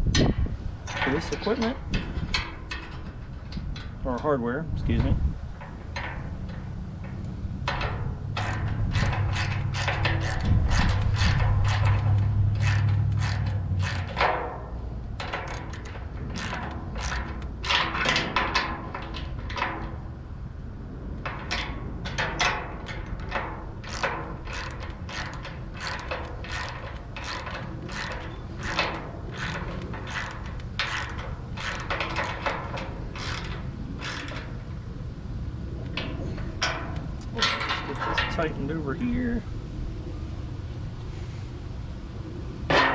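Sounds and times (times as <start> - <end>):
socket ratchet clicking: 5.6 - 14.6, 15.2 - 20.0, 21.4 - 34.7.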